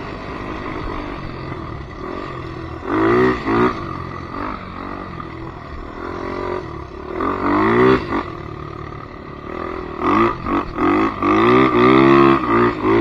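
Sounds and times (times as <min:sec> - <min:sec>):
atv engine revving: 0:00.0 - 0:13.0.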